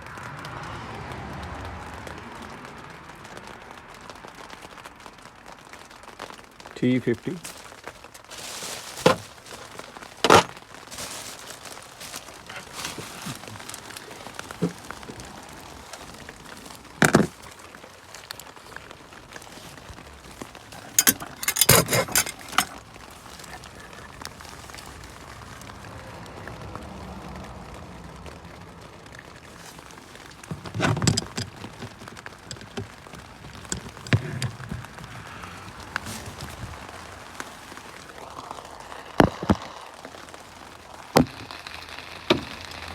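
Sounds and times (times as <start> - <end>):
hand tools clinking on metal: 17.0 - 17.5, 20.4 - 24.1, 30.4 - 35.0.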